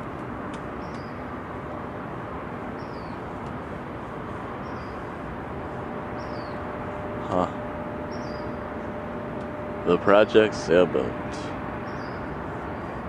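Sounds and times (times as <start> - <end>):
bird chirping: 0.8 - 1.2, 2.8 - 3.3, 4.6 - 5.1, 6.1 - 6.7, 8.0 - 8.7, 11.4 - 13.0.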